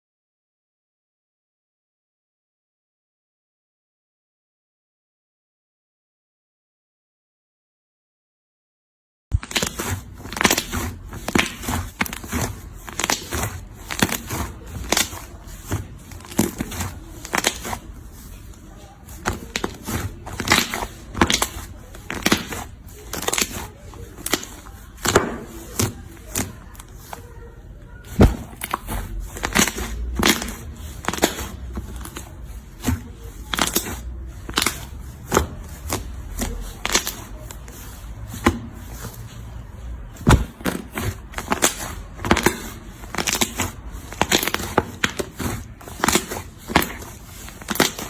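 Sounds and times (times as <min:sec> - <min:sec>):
slime popping and crackling: 0:19.2 - 0:27.2, 0:40.2 - 0:48.0.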